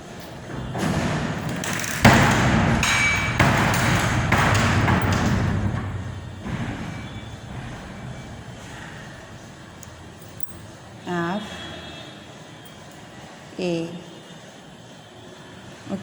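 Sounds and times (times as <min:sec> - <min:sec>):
knocks and clatters: 0:00.0 - 0:10.8.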